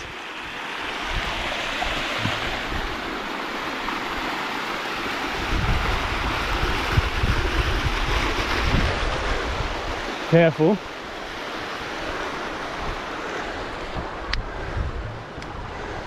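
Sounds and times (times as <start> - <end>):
creek water rushing over rocks: 0.0 - 16.0
wind rumble on microphone: 0.9 - 3.2, 5.4 - 10.1, 12.1 - 16.0.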